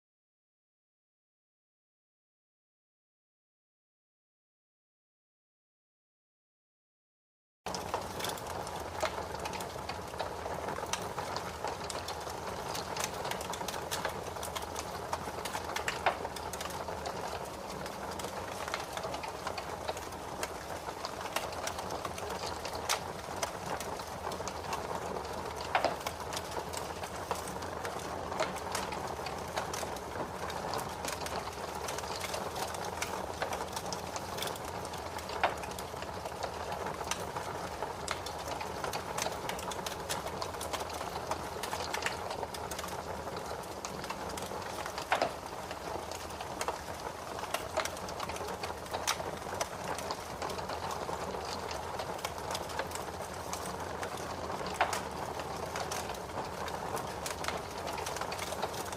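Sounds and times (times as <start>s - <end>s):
fire crackling: 7.7s - 58.9s
soft hiss of fire: 7.7s - 58.9s.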